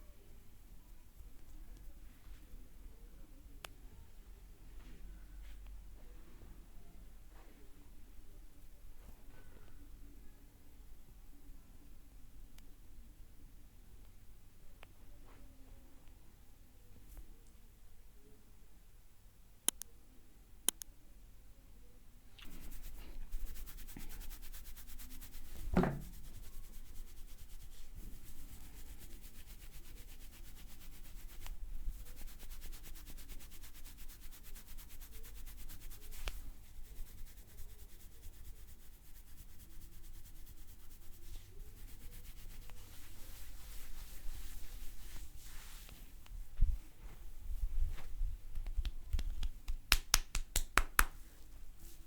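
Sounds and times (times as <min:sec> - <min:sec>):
hands rubbing hair and scalp: 0:22.4 - 0:52.0
dull thump: 0:25.6 - 0:26.2.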